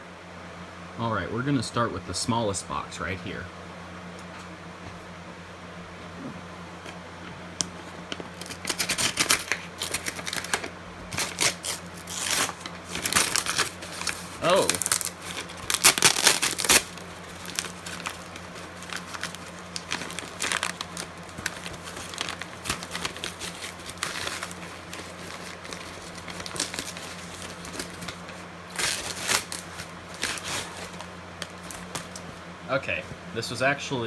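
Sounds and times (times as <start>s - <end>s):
packaging crinkling and rustling: 6.7s - 32.4s.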